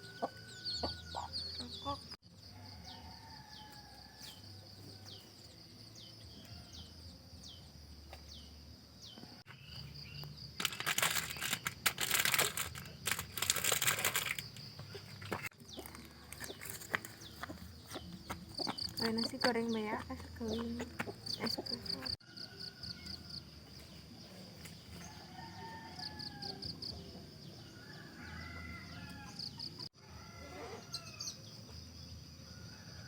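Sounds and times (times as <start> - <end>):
crickets trilling: 0.0 - 33.0
loud crackling rustle: 10.6 - 14.6.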